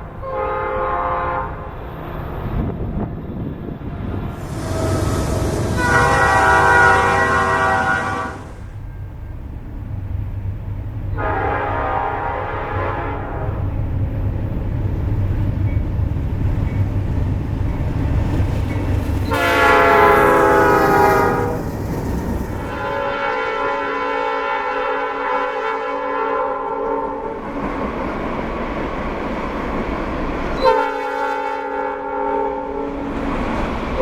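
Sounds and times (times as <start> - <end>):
low train rumble: 0.0 - 34.0
locomotive air horn blasts: 0.2 - 1.8, 3.8 - 8.7, 11.1 - 13.8, 19.3 - 21.7, 22.7 - 27.2, 30.6 - 32.8.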